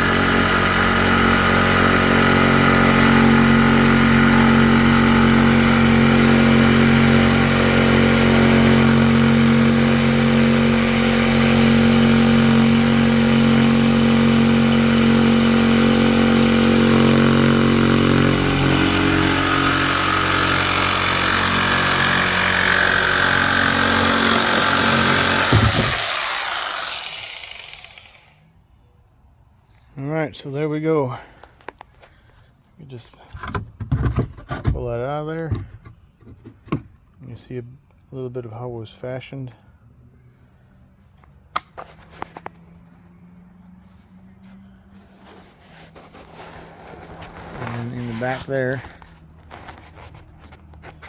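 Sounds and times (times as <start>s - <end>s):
electric jigsaw cutting: 0.0s - 28.4s, 45.4s - 49.0s
saw motor winding down: 0.0s - 28.5s.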